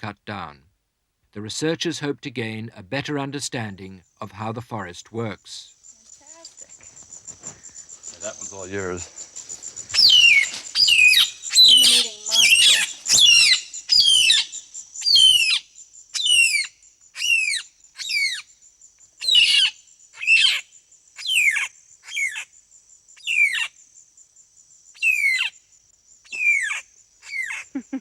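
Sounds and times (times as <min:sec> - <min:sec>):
bird calling: 0:04.8 - 0:18.5, 0:19.2 - 0:22.5, 0:23.2 - 0:23.8, 0:25.0 - 0:25.6, 0:26.3 - 0:28.0
insect buzz: 0:05.4 - 0:28.0.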